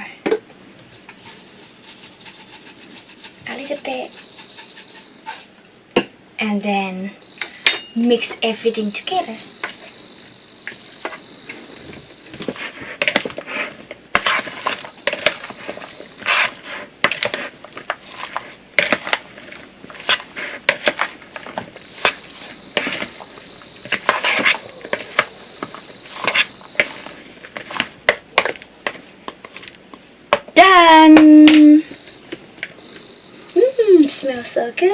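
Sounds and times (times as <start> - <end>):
utensils scraping and clinking on bowl: 0.8 - 5.6, 10.7 - 29.8.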